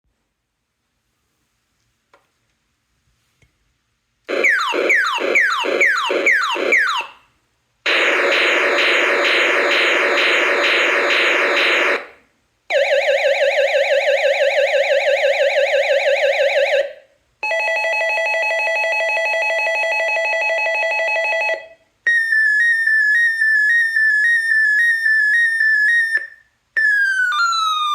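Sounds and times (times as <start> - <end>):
falling high electronic chirp: 22.4 - 27.9.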